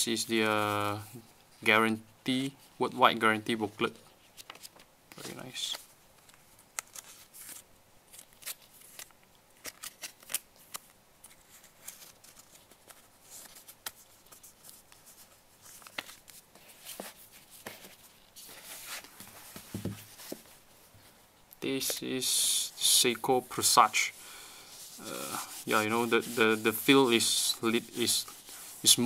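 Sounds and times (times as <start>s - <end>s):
paper and cardboard rustling: 3.7s - 21.2s, 24.7s - 29.0s.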